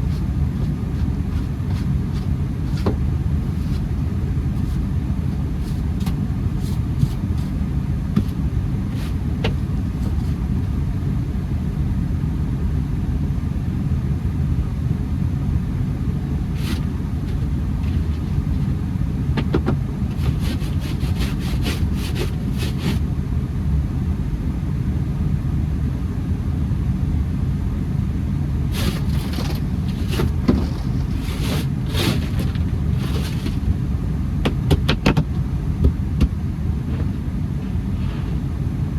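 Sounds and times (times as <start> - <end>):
car engine rumbling: 0.0 - 11.6, 15.8 - 23.0, 28.6 - 38.9.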